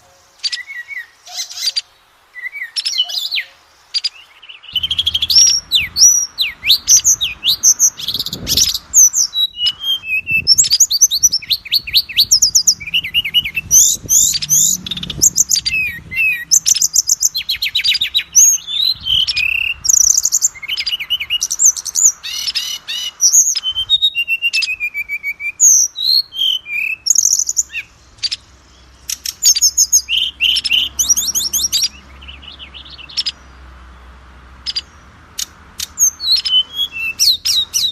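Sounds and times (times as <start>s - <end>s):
songbird singing whistles and trills: 0.0s - 33.4s, 34.6s - 37.9s.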